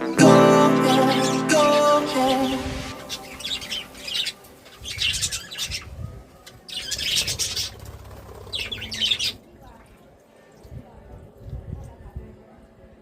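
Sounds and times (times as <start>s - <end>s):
budgerigars chirping: 3.0s - 5.9s, 6.7s - 7.8s.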